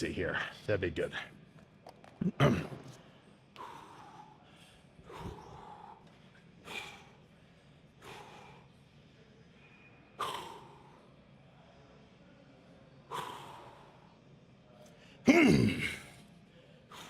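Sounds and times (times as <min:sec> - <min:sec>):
man breathing hard: 0:03.5 - 0:08.8, 0:13.1 - 0:14.0.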